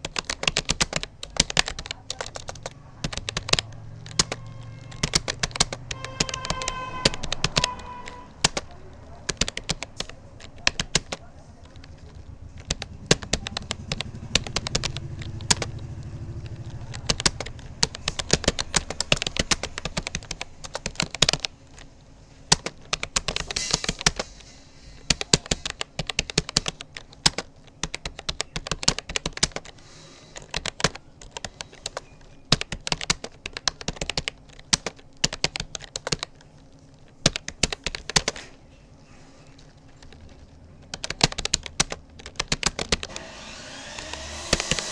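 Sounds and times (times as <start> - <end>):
keyboard key clicks: 0.0 - 21.9, 22.5 - 24.4, 25.1 - 38.6, 39.5 - 44.9.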